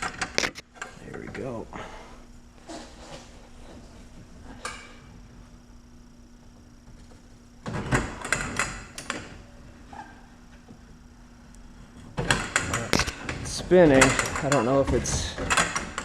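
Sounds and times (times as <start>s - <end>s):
hand tools clicking and clanking: 12.2s - 16.0s.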